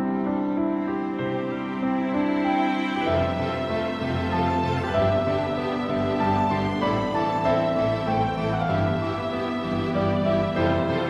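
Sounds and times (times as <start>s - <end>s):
slow sad background music: 0.6s - 11.0s.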